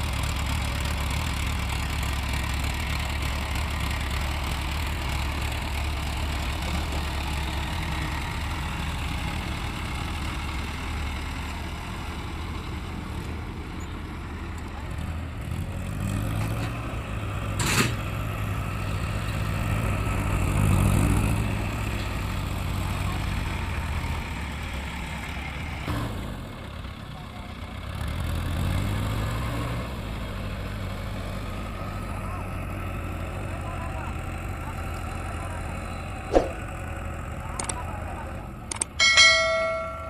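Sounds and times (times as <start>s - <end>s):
heavy vehicle engine running: 0.0s - 40.0s
sharp click: 36.3s - 36.6s.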